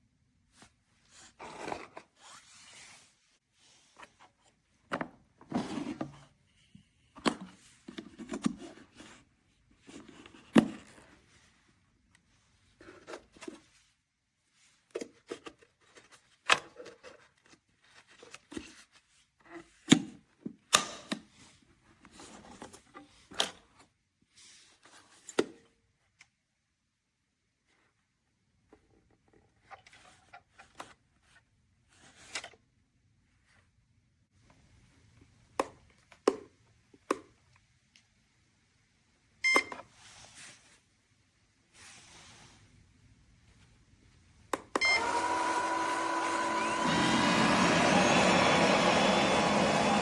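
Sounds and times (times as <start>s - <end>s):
rustling and scraping: 0.5s - 6.4s, 39.9s - 41.0s, 41.7s - 44.3s.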